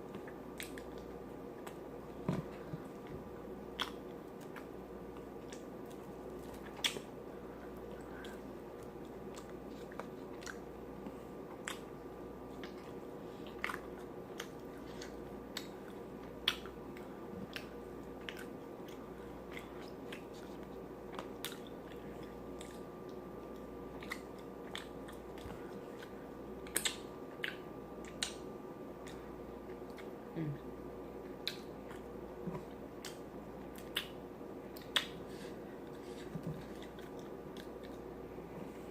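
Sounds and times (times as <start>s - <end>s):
chewing chicken: 0.0s - 30.5s, 31.2s - 38.2s
wet lip smacks: 34.8s - 35.3s.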